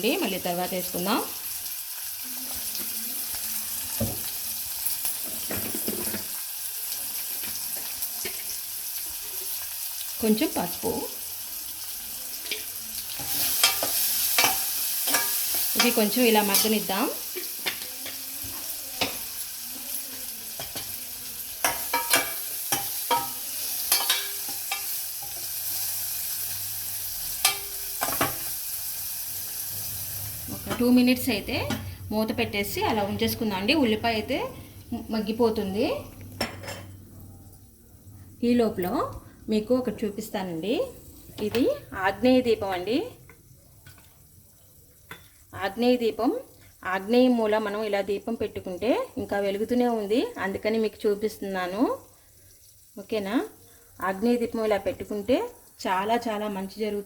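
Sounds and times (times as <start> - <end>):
onions sizzling in oil: 0.0 - 36.7, 38.4 - 57.0
spoon stirring and knocking pot: 12.4 - 19.3, 20.6 - 21.0, 21.6 - 25.5, 27.4 - 28.5.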